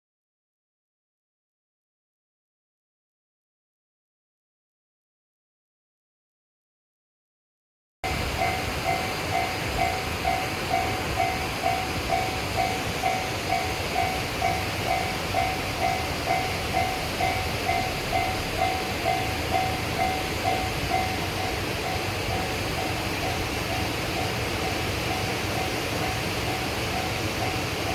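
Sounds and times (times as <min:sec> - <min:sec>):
level-crossing warning bell clanging: 0:08.0 - 0:27.9.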